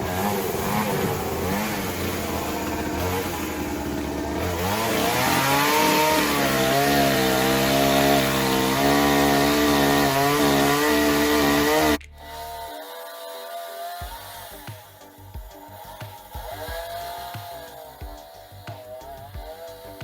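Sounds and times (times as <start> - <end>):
chainsaw cutting wood: 0.0 - 20.0
quiet music: 13.7 - 20.0.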